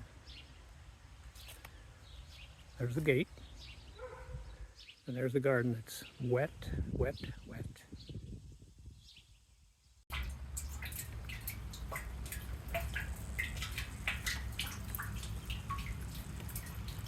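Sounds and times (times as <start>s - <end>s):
water dripping and trickling: 10.1s - 17.0s.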